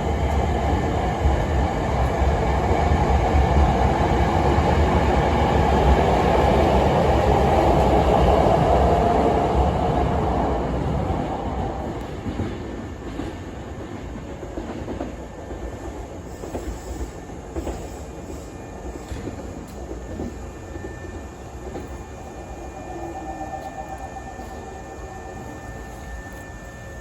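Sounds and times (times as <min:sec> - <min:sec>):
thin steady whine: 0:16.3 - 0:27.0.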